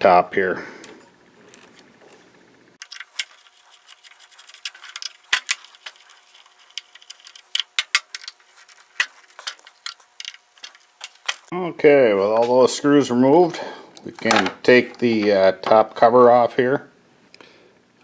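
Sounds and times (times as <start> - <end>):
loose screws handled: 2.8 - 11.5
screwdriver clicking on screws: 2.8 - 11.5.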